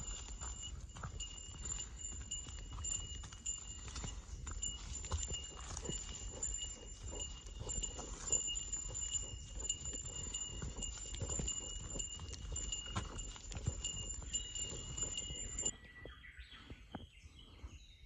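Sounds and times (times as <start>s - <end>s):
small bell ringing: 0.0s - 15.7s
footsteps on trail: 0.0s - 17.8s.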